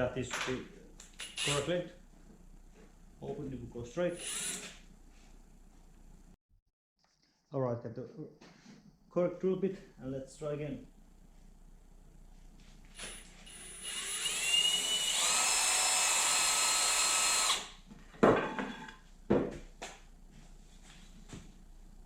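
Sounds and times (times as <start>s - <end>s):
power drill boring into wood: 1.2s - 1.7s, 4.2s - 4.8s, 13.0s - 17.8s.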